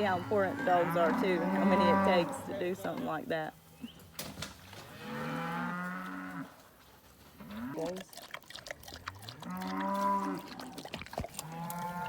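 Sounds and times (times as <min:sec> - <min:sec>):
cattle mooing: 0:00.0 - 0:03.0, 0:04.9 - 0:06.6, 0:09.2 - 0:10.8, 0:11.4 - 0:12.0.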